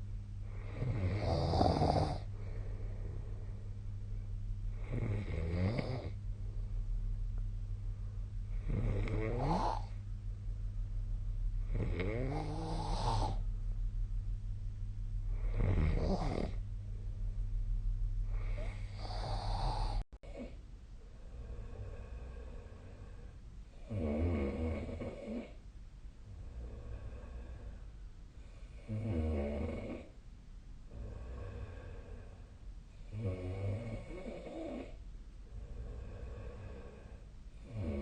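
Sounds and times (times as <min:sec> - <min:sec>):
steady low hum: 0:00.0 - 0:38.0
person snoring: 0:00.4 - 0:03.4, 0:04.7 - 0:06.2, 0:08.5 - 0:10.0, 0:11.6 - 0:13.4, 0:15.3 - 0:16.6, 0:18.2 - 0:20.6, 0:21.2 - 0:25.6, 0:26.4 - 0:27.8, 0:28.6 - 0:30.1, 0:30.9 - 0:38.0.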